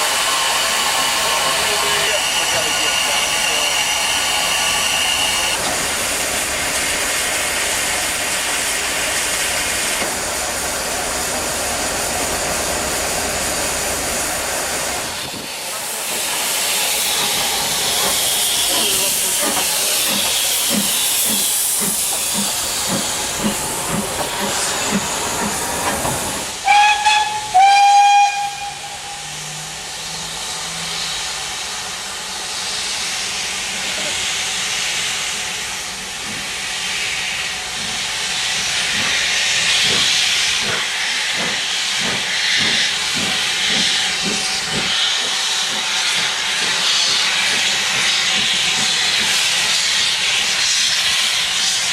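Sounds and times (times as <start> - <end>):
steam hissing: 0.0 - 51.9
steam whistle blasts: 26.6 - 29.7.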